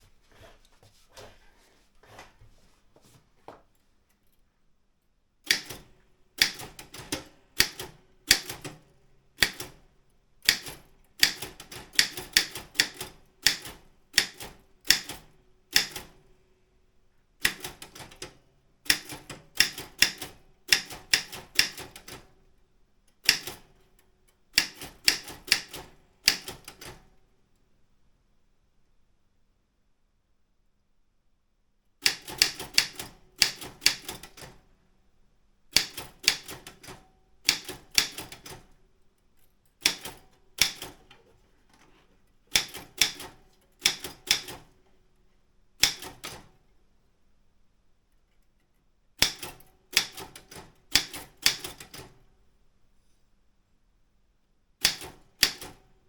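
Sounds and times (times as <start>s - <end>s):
manual typewriter keystrokes: 5.4s - 16.3s, 17.4s - 22.4s, 23.1s - 27.2s, 32.0s - 34.7s, 35.7s - 38.8s, 39.8s - 41.2s, 42.5s - 44.8s, 45.8s - 46.6s, 49.2s - 52.3s, 54.8s - 55.9s.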